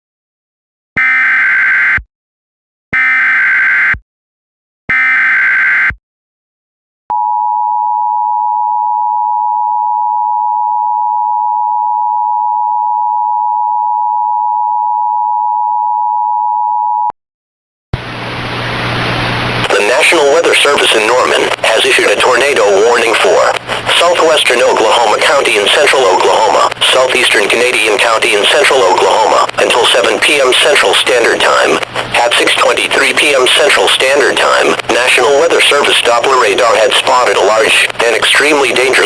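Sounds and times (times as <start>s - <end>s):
hissy broadcast audio: 18.0s - 39.0s
data header bursts: 19.7s - 39.0s.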